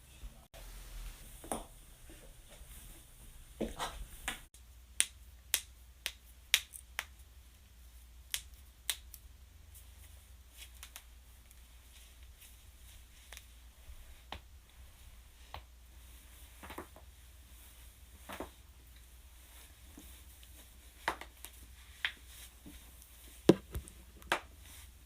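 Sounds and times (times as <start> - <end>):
soft rustling: 9.6 - 25.0.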